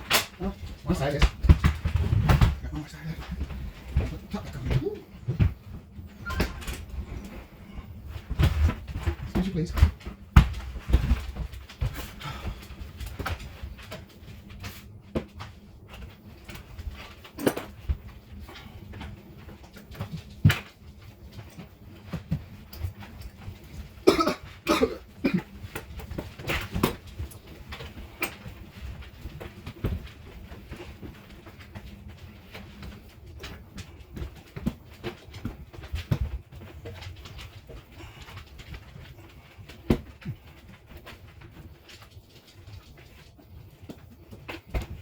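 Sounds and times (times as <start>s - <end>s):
harsh cough-like sounds: 24.0s - 25.5s.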